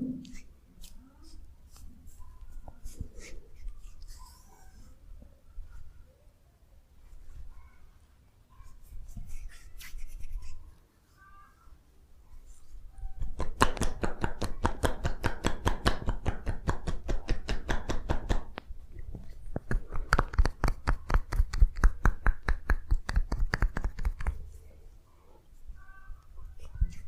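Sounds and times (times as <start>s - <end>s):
rapid hand strikes: 13.2s - 18.6s, 19.6s - 24.4s.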